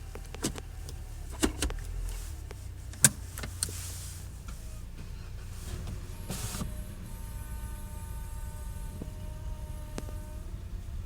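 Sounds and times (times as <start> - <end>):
car engine droning: 0.0 - 11.0.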